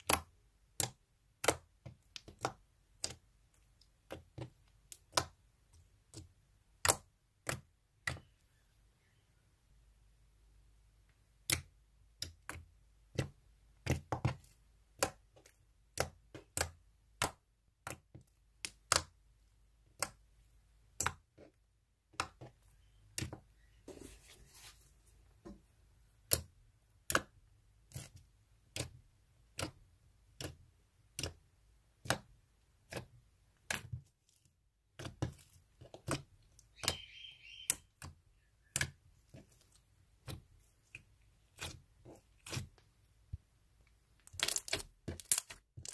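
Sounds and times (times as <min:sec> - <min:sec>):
slime clicking and popping: 0:11.3 - 0:20.3, 0:26.2 - 0:34.0, 0:34.9 - 0:41.8, 0:44.2 - 0:45.9.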